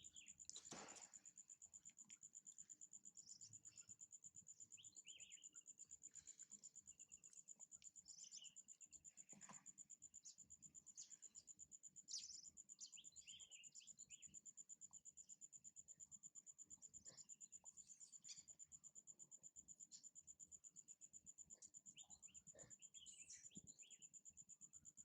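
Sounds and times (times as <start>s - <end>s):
high bird chirps: 4.7s - 5.6s.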